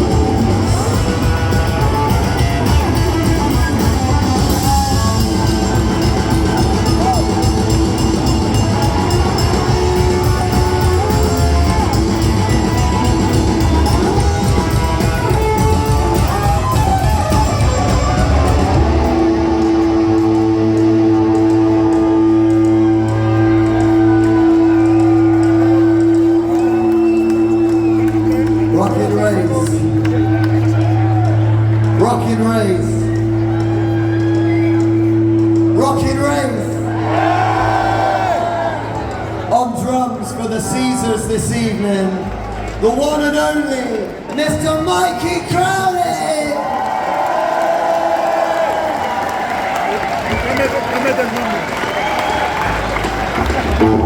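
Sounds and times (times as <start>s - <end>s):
rockabilly band playing live: 0.0s - 38.0s, 49.0s - 54.0s
electric guitar: 0.0s - 39.4s, 48.6s - 54.0s.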